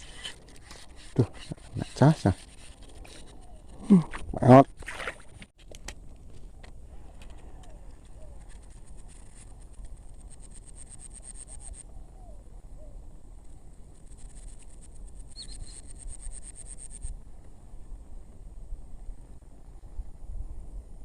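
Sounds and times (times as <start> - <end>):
insect trill: 8.4 - 11.8, 13.9 - 17.1.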